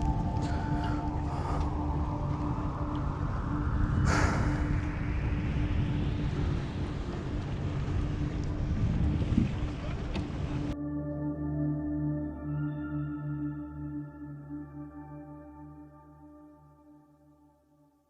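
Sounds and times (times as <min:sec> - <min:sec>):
wind buffeting microphone: 0:00.0 - 0:10.8
background music with low tone: 0:00.0 - 0:18.0.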